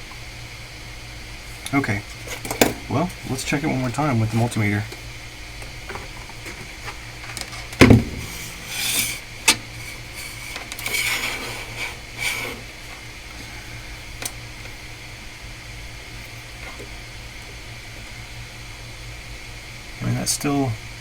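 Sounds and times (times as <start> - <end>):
steady low hum: 0.0 - 21.0
rustling: 5.8 - 12.6
heavy thump on workbench: 7.8 - 9.2.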